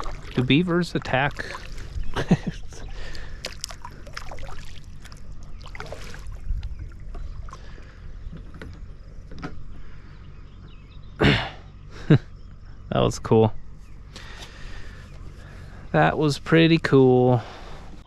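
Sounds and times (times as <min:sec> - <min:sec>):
water lapping against boat: 0:00.0 - 0:10.2
steady low rumble: 0:00.0 - 0:18.0.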